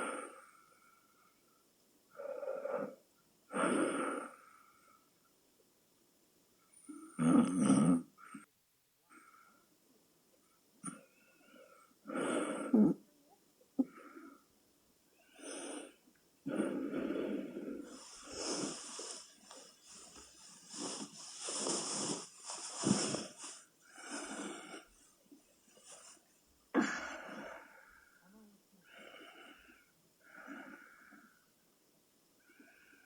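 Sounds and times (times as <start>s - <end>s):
person snoring wheezily: 16.5s - 19.3s, 20.7s - 24.9s.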